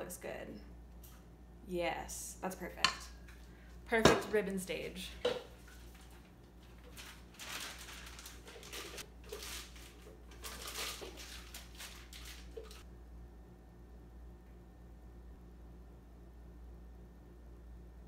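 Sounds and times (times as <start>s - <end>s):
batter scraping and crinkling: 5.5s - 12.8s.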